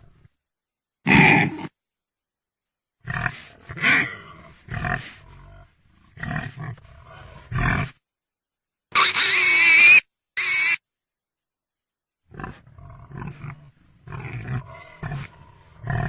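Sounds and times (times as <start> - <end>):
pig grunting: 1.1 - 1.7, 3.0 - 8.0, 12.3 - 16.0
pig squealing: 1.1 - 1.7, 8.9 - 10.8.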